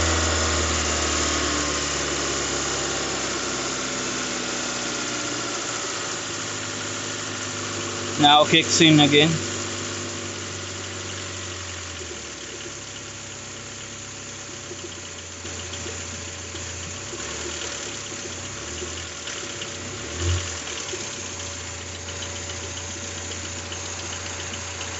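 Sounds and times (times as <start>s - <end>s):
car engine idling: 0.0s - 24.9s
ticking rattle: 20.8s - 24.9s.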